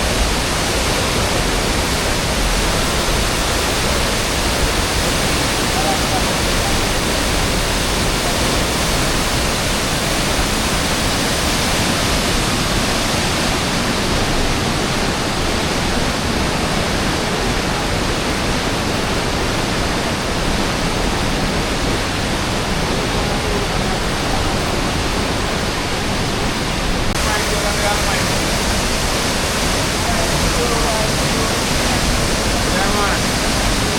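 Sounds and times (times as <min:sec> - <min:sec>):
river water rushing: 0:00.0 - 0:33.9.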